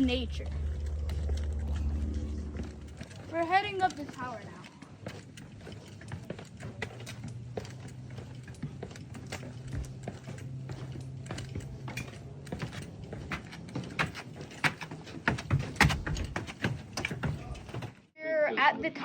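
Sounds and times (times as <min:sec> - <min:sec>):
low steady hum: 0:00.0 - 0:06.9
footsteps climbing stairs: 0:00.0 - 0:18.1.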